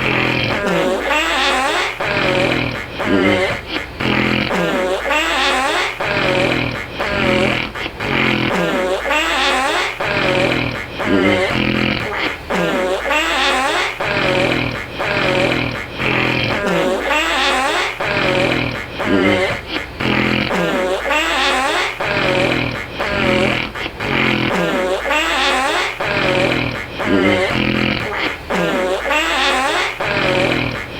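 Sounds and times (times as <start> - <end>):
loud rattling snoring: 2.2 - 4.6, 10.2 - 12.2, 18.2 - 20.5, 26.2 - 28.2.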